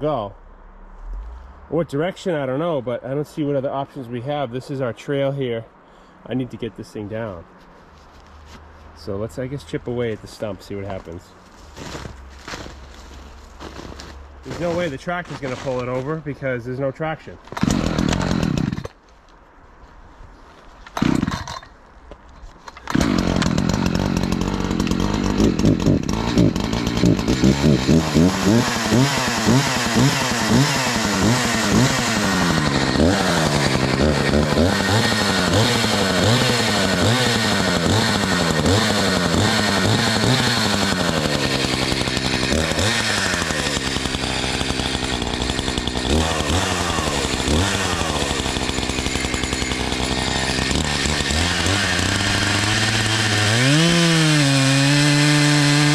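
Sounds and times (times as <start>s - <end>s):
chainsaw revving and cutting: 11.8s - 16.0s, 17.5s - 19.0s, 21.0s - 21.7s, 22.8s - 55.9s.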